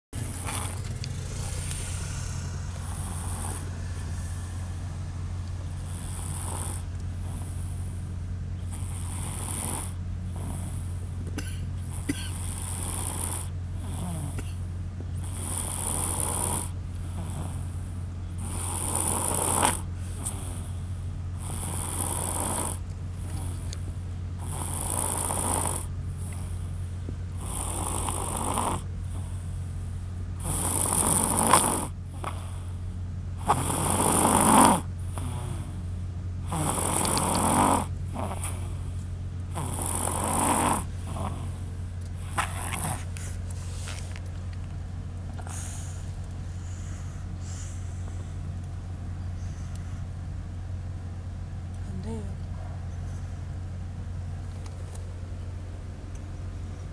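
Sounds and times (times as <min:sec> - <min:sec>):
snoring: 0:00.2 - 0:08.0, 0:08.6 - 0:11.1, 0:11.8 - 0:23.8, 0:24.4 - 0:26.7, 0:27.3 - 0:29.5, 0:30.4 - 0:32.8, 0:33.4 - 0:38.9, 0:39.5 - 0:43.7, 0:45.3 - 0:48.2.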